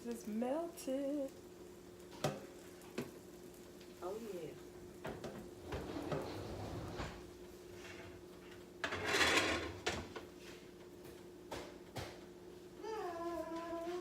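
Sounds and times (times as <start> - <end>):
steady low hum: 0.0 - 8.9
pan scraping as it slides: 5.6 - 8.2, 8.8 - 9.8.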